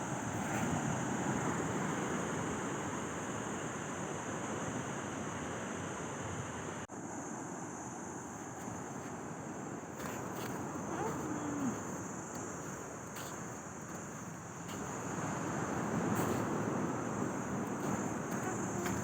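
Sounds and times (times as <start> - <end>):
surf at the seashore: 0.0 - 19.0
wind buffeting the microphone: 9.9 - 19.0.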